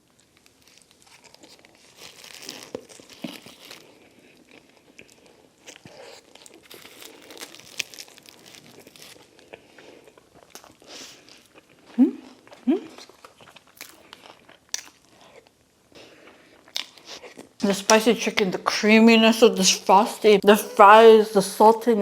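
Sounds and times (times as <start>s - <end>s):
food crunching when bitten: 0.2s - 17.6s
paper wrapper crinkling: 0.3s - 4.8s, 5.7s - 9.5s.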